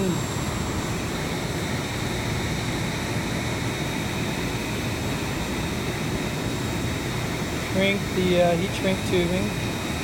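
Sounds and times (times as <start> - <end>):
heat gun blower hissing: 0.0 - 10.0.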